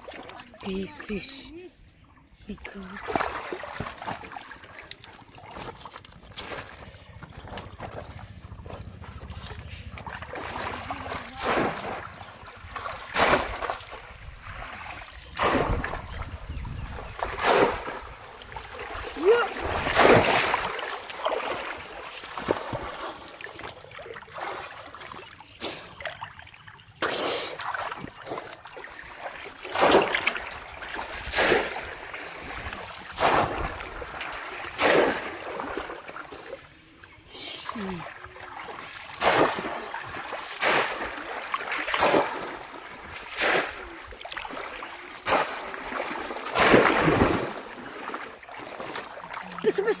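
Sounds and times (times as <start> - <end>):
fish trap splashing into water: 10.0 - 16.4, 17.1 - 23.5, 29.3 - 36.2, 38.6 - 49.3.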